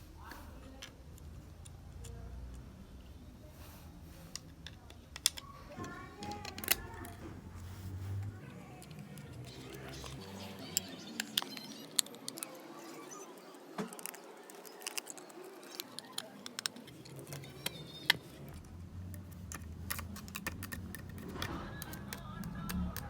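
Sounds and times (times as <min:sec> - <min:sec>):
metal parts and tools clicking: 0:04.3 - 0:07.2, 0:08.4 - 0:23.0.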